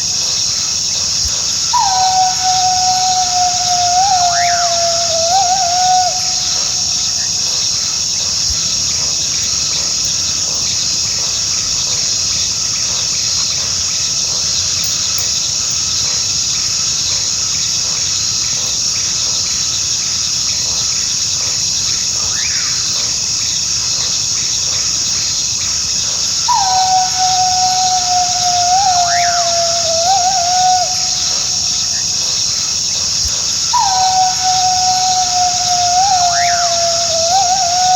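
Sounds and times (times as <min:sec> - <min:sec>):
high-pitched insect chorus: 0:00.0 - 0:37.9
coyote howling: 0:01.6 - 0:06.8, 0:26.4 - 0:31.5, 0:33.7 - 0:37.9.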